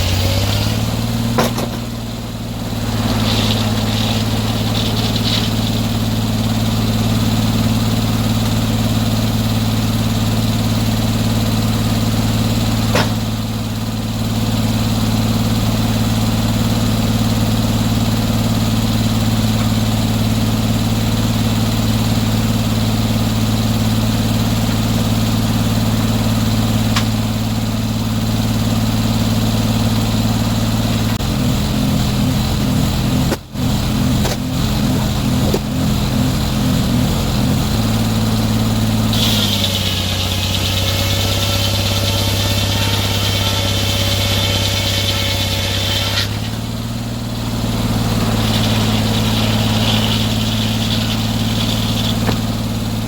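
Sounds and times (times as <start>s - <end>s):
sawmill engine idling: 0.0s - 53.0s.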